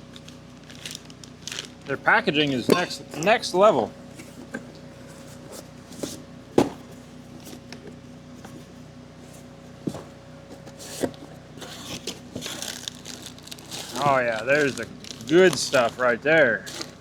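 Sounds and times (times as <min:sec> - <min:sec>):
packaging rustling: 0:00.0 - 0:02.0, 0:10.6 - 0:17.0
steady low hum: 0:00.0 - 0:17.0
sharp knocks of box handling: 0:06.0 - 0:07.0.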